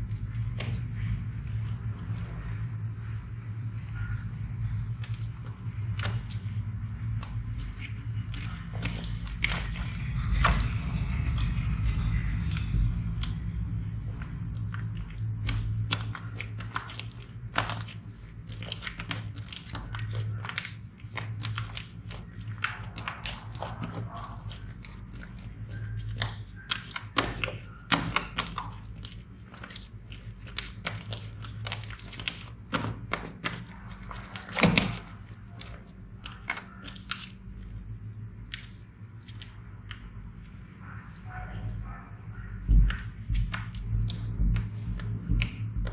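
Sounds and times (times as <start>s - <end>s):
steady low hum: 0.0s - 45.9s
slime squished by hand: 13.1s - 40.1s.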